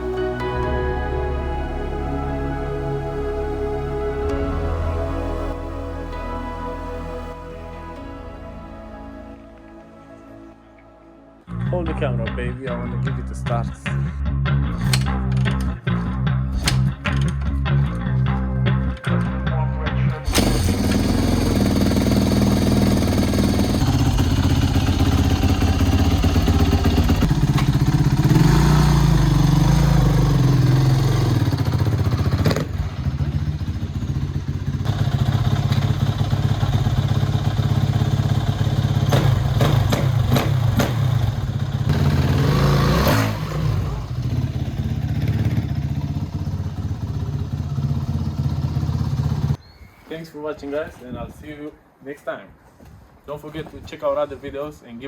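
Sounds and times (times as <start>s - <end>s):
motorcycle engine idling and revving: 20.2s - 49.6s.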